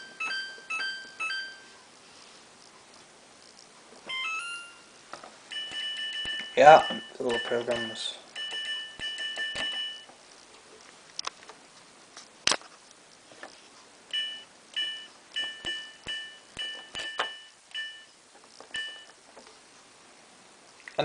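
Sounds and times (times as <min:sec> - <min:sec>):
dial clicks: 0:05.5 - 0:10.1
two-tone beeps: 0:05.5 - 0:10.1, 0:14.1 - 0:19.1.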